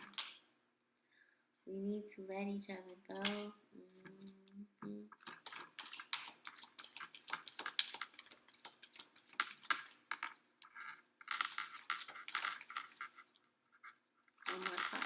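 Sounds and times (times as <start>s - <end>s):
cards being shuffled: 5.2s - 13.4s.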